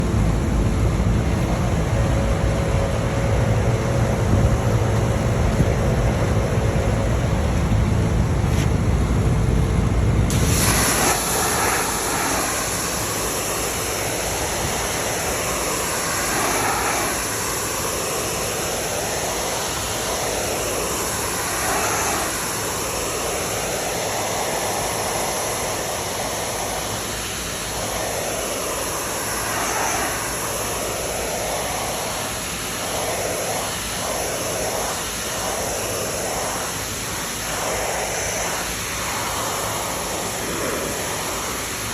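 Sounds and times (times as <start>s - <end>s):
pressure washer spray hiss: 10.3s - 41.9s.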